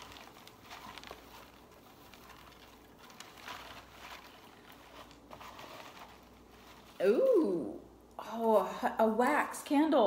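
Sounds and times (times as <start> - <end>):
rustling of packaging: 0.0 - 7.4.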